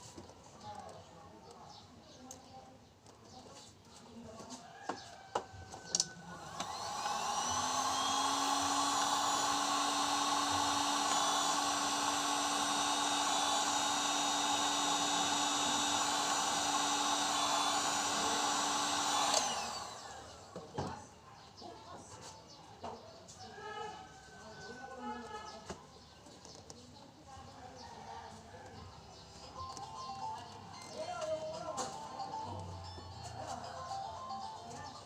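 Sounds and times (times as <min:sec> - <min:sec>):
electric motor tool whining: 0:05.4 - 0:20.9.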